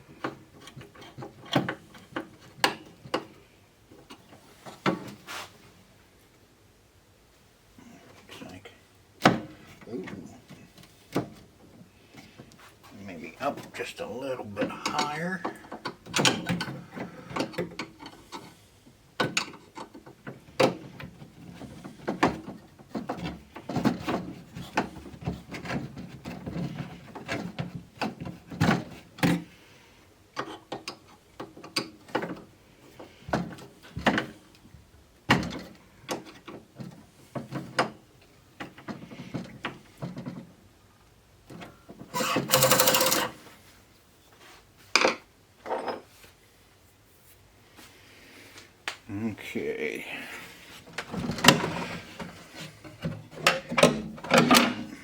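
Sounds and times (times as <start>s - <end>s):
tools clicking and tapping on wood: 14.8s - 18.5s, 19.2s - 29.4s, 30.4s - 32.5s, 51.0s - 55.0s.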